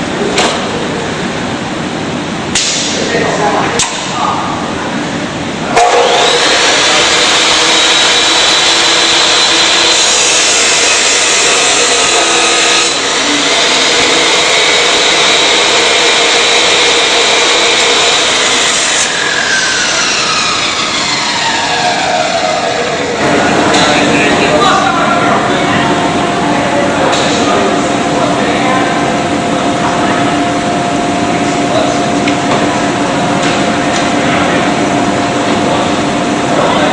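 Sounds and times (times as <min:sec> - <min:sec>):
cut-off saw grinding steel: 0:05.8 - 0:24.1
saw motor whine: 0:05.8 - 0:26.3.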